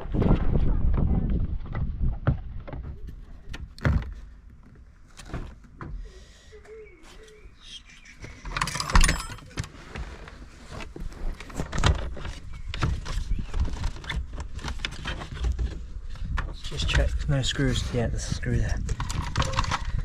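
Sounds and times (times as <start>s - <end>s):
scraping rustle: 8.3s - 20.0s.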